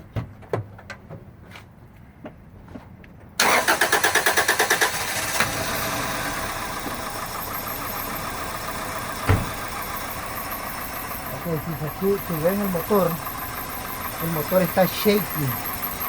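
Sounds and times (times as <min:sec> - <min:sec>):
car engine cranking and idling roughly: 0:03.4 - 0:16.0
thump: 0:09.2 - 0:09.6.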